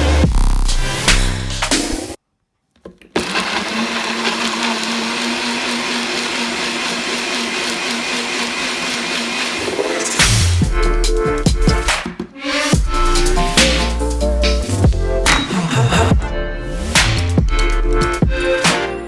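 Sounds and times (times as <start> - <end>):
electric blender running: 3.2 - 10.2.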